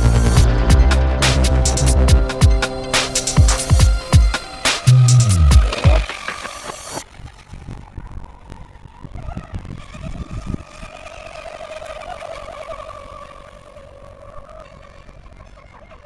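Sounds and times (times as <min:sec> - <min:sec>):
low rumble: 0:00.0 - 0:06.1
music track: 0:00.0 - 0:07.0
electric boat motor whining: 0:00.0 - 0:08.4.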